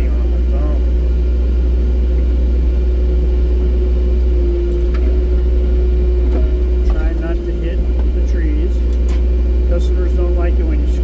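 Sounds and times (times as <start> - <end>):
excavator diesel engine rumbling: 0.0 - 11.0.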